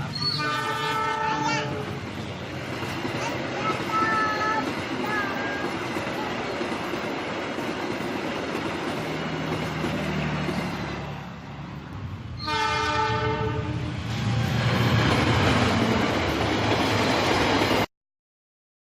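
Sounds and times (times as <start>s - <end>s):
train horn blast: 0.0s - 1.8s, 12.4s - 14.1s
toy train running on rails: 1.0s - 10.8s.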